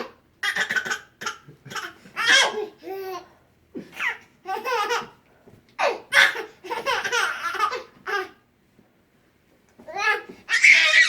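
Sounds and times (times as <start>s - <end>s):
baby laughing: 0.0s - 3.3s, 4.0s - 5.2s, 5.8s - 8.4s.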